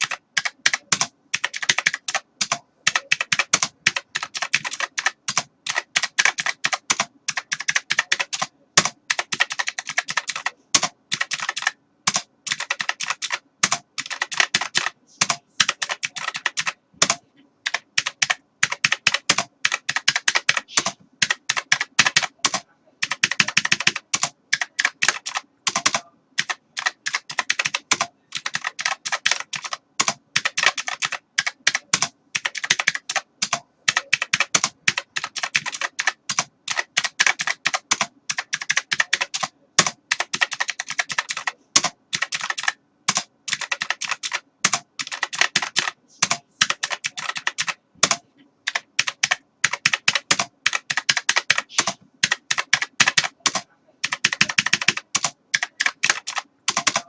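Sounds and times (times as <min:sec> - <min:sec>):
computer keyboard typing: 0:00.0 - 0:57.0.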